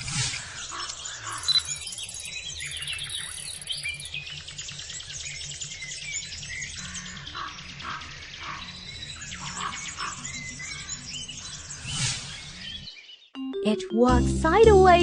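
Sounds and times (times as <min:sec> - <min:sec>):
birds chirping: 0:00.0 - 0:14.1
soft background music: 0:13.4 - 0:15.0.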